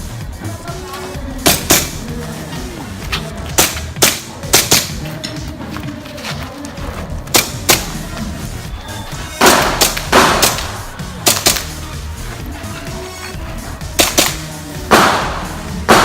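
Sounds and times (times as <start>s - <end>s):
pistol shots: 1.4s - 2.2s, 3.5s - 5.1s, 7.3s - 8.1s, 9.4s - 12.0s, 13.9s - 16.0s.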